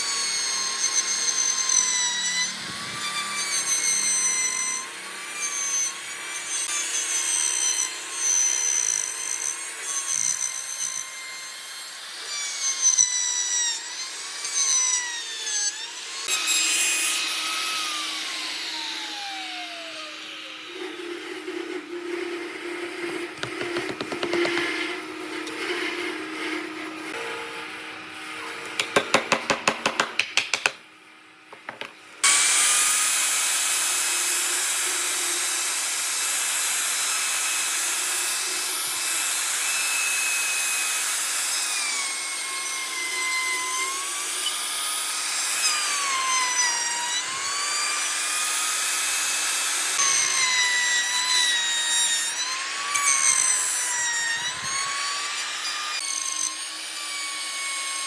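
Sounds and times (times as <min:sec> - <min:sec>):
power tool cutting wood: 0:00.0 - 0:58.0
sharp taps: 0:23.4 - 0:24.7, 0:28.7 - 0:30.8.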